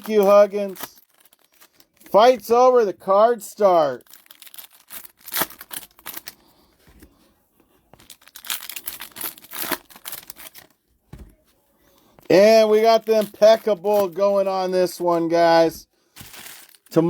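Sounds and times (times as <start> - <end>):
wrapper tearing and crinkling: 0.0 - 2.1, 4.0 - 6.4, 8.0 - 10.8, 16.2 - 17.0.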